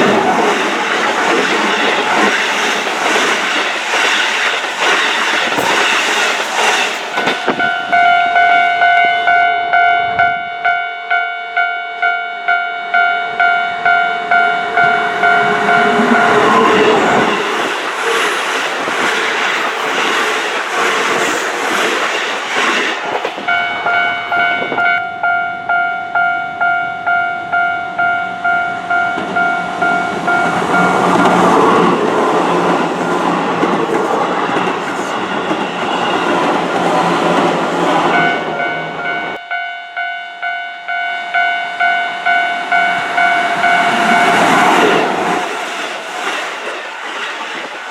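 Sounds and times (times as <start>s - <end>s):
electric train passing: 0.0s - 11.6s, 12.9s - 47.9s
level-crossing warning bell: 6.6s - 17.9s, 23.4s - 33.6s, 38.0s - 46.1s.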